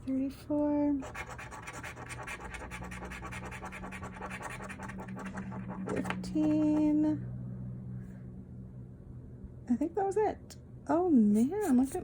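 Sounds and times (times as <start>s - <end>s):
lottery ticket being scratched: 1.0s - 6.9s.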